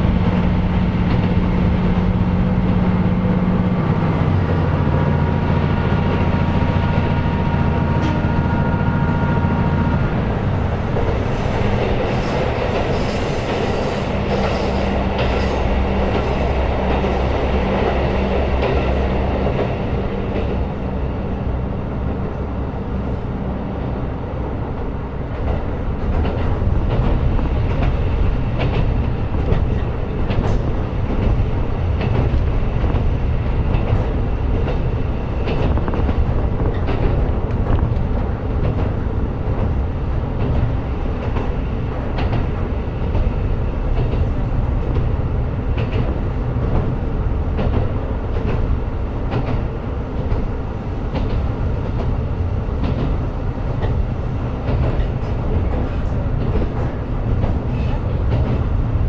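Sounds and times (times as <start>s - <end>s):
railcar engine and wheels rumbling: 0.0s - 59.0s
wheels clicking over rail joints: 10.1s - 20.9s, 25.3s - 59.0s.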